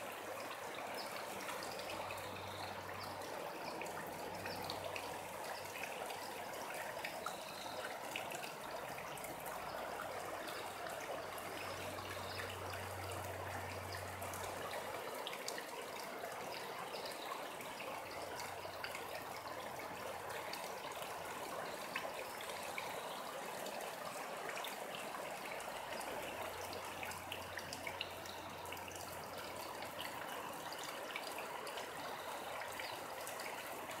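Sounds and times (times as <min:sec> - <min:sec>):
trickling stream: 0:00.0 - 0:34.0.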